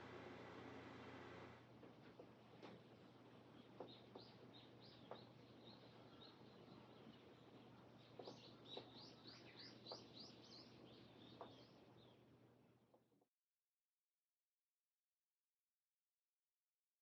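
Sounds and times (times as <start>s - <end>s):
faint steady hum: 0.0s - 12.9s
small bird chirping: 3.6s - 12.2s.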